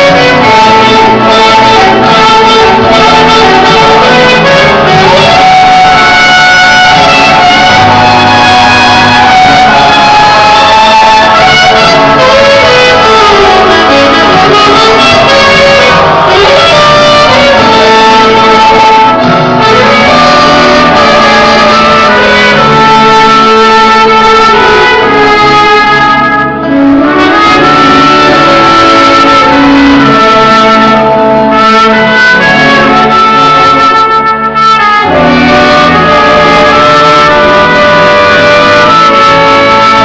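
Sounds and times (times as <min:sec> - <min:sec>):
brass horns melody: 0:00.0 - 0:40.0
gospel band music: 0:00.0 - 0:40.0.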